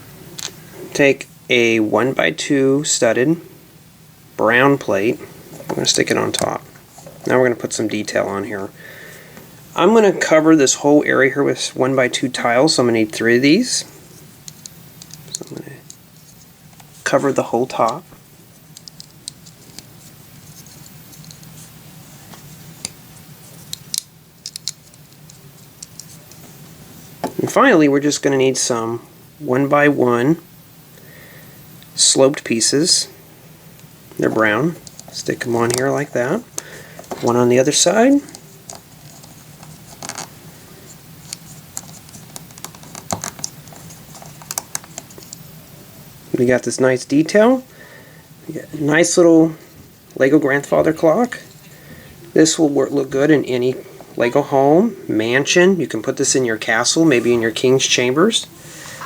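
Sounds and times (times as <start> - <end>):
faint steady hum: 0.0 - 59.0
plastic bricks clicking: 23.7 - 26.2.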